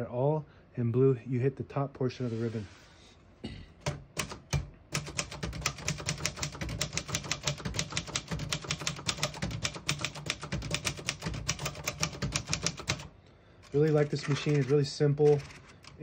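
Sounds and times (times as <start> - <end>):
manual typewriter typing: 3.8 - 16.0.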